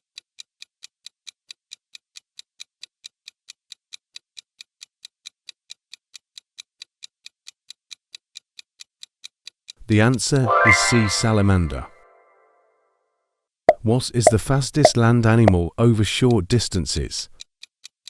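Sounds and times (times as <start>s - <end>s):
clock ticking: 13.7s - 15.7s.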